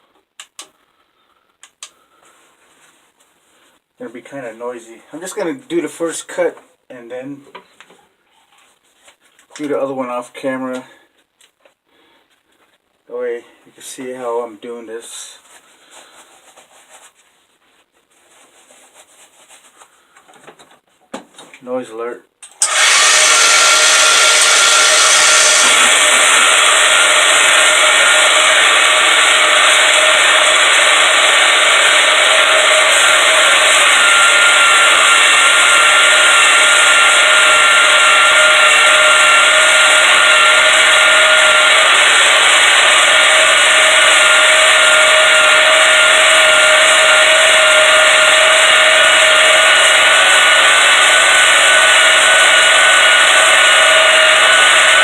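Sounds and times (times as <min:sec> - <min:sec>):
bandsaw cutting steel: 0:22.5 - 0:55.0.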